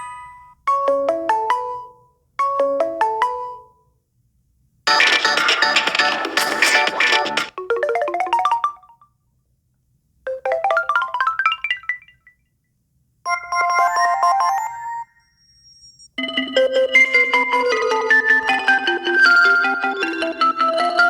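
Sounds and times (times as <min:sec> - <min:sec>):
fuller ringtone with low note: 0:04.9 - 0:09.0.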